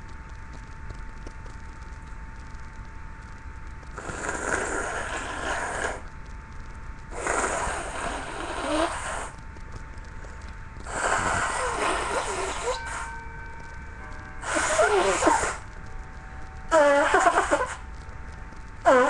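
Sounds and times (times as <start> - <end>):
person blowing nose: 10.9 - 13.0, 14.4 - 15.6, 16.7 - 17.8.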